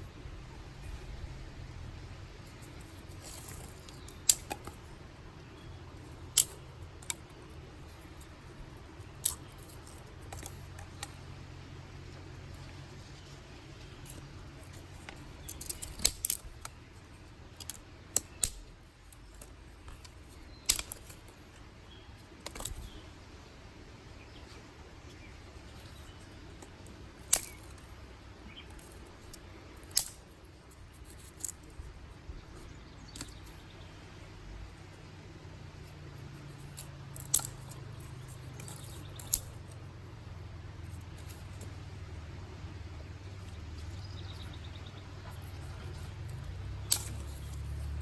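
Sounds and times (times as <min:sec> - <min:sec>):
low steady rumble: 0:00.0 - 0:48.0
sticks snapping: 0:02.4 - 0:11.4, 0:12.2 - 0:21.6, 0:22.2 - 0:23.1, 0:25.7 - 0:31.9, 0:32.5 - 0:33.9, 0:35.8 - 0:39.8, 0:42.8 - 0:48.0.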